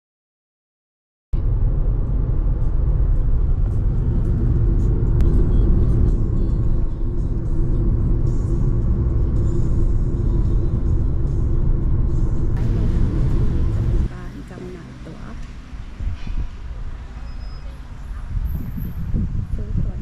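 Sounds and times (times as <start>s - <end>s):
car road and engine rumble: 1.4s - 20.0s.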